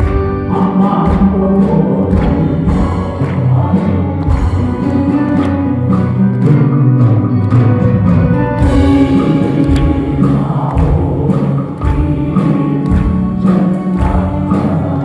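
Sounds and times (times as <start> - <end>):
steady drum beat: 0.0 - 15.0
many voices singing together: 8.7 - 15.0.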